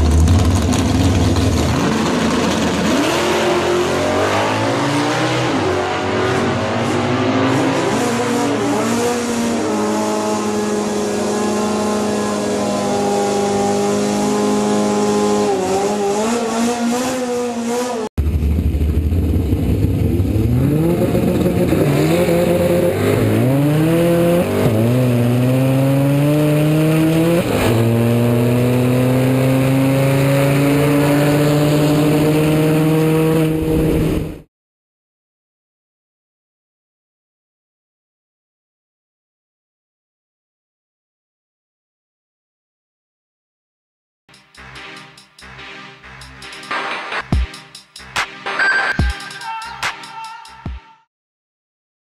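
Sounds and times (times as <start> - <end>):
car engine revving: 0.0 - 34.5.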